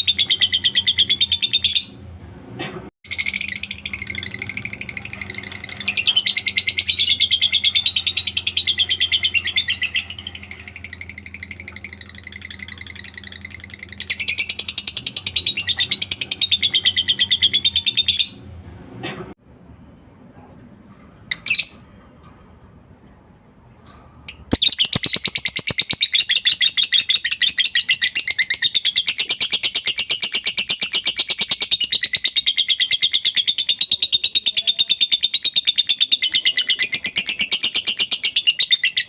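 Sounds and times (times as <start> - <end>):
lovebird chattering: 3.1 - 18.4, 24.3 - 39.0.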